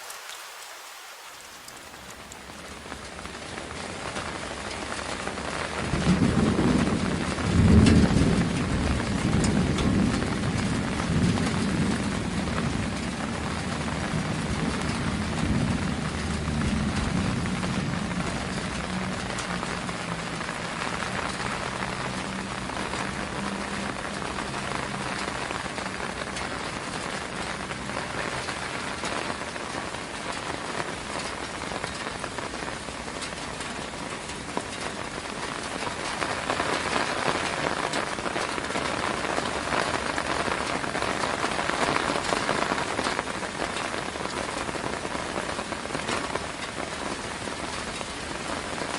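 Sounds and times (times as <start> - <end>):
steady rain: 0.0 - 48.9.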